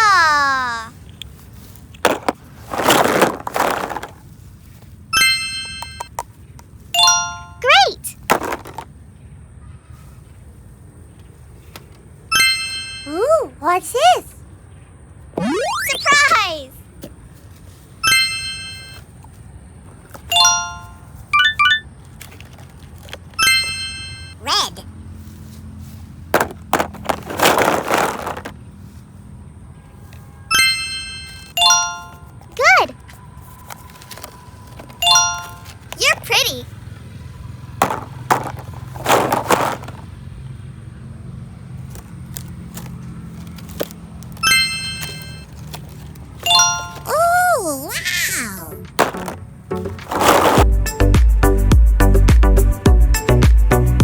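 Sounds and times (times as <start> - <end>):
scraping rustle: 1.3 - 5.0, 25.2 - 29.1, 37.8 - 40.1, 49.0 - 50.6
bright chime dings: 5.2 - 6.1, 7.0 - 7.8, 12.3 - 13.3, 18.0 - 19.0, 20.3 - 21.8, 23.4 - 24.7, 30.5 - 32.3, 35.0 - 35.7, 44.4 - 45.4, 46.4 - 47.3
bell-like chime: 23.4 - 24.4.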